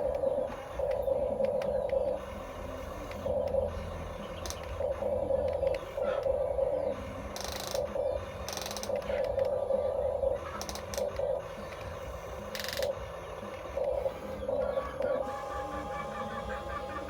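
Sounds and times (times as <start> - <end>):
small electric motors whirring: 7.0 - 9.6, 10.4 - 17.0.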